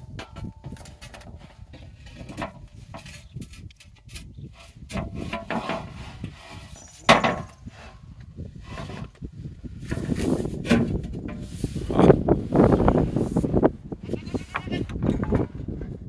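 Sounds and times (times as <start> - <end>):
metal blade knocks and clunks: 6.9 - 7.6.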